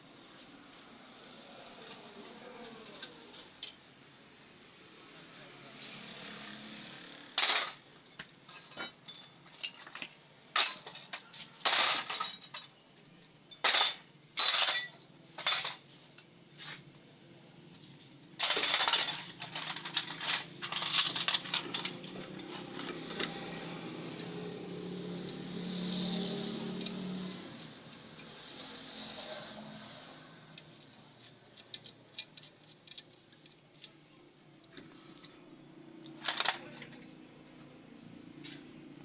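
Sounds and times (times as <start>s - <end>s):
metal tools clinking: 7.4s - 12.8s, 13.5s - 15.8s, 18.4s - 23.0s, 36.1s - 37.0s.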